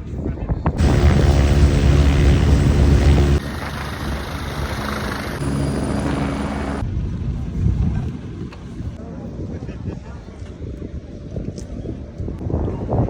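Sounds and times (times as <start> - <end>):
aircraft engine and propeller drone: 0.8 - 9.0.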